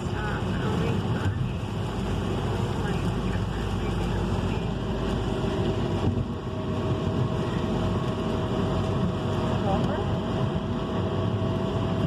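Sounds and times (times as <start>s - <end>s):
low rumble: 0.0s - 12.0s
rain on car: 0.0s - 12.0s
tyres on wet road: 0.0s - 12.0s.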